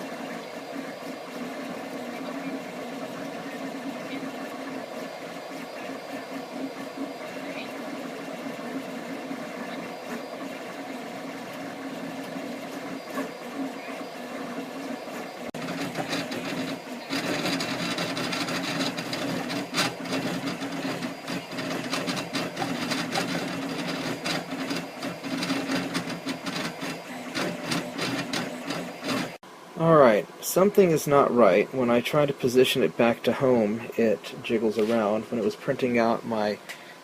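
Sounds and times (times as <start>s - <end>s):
printer stepper motors whirring: 0.0s - 29.5s.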